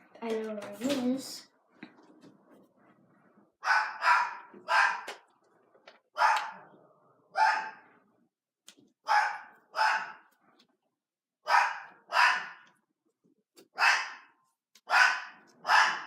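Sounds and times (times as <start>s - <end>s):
dog barking: 3.6s - 5.1s, 6.1s - 6.7s, 7.3s - 8.0s, 9.0s - 10.3s, 11.4s - 12.7s, 13.7s - 16.0s.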